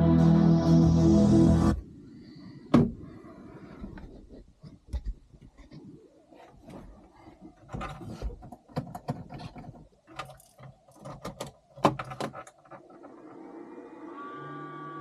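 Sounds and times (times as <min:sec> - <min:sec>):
metallic clicks and knocks: 0:07.6 - 0:13.0.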